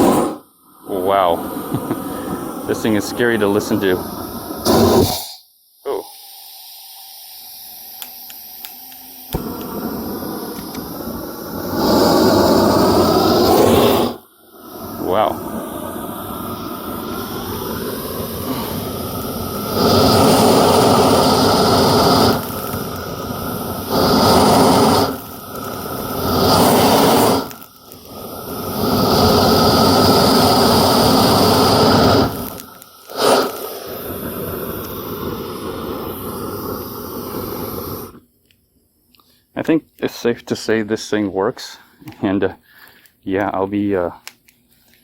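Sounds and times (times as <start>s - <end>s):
torch flame jet roaring: 0.0s - 38.2s.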